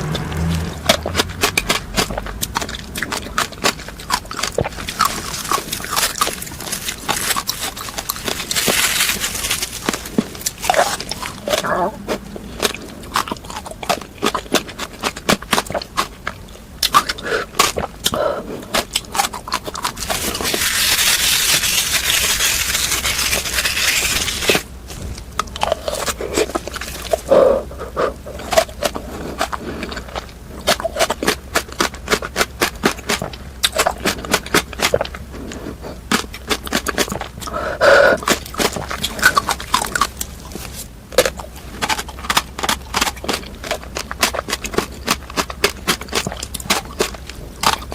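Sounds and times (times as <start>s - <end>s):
crunching and chewing frozen fruit: 0.0s - 47.9s.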